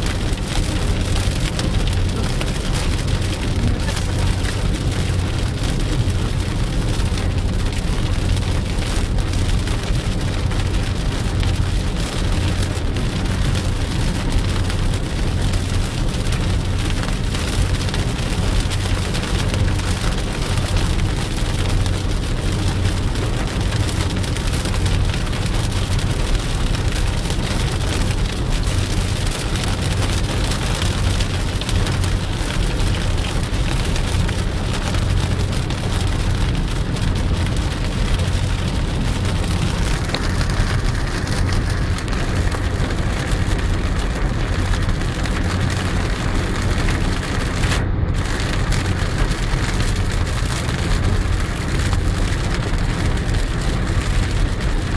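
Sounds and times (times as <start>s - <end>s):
low vehicle rumble: 0.0s - 54.9s
heavy rain hissing: 1.2s - 5.5s.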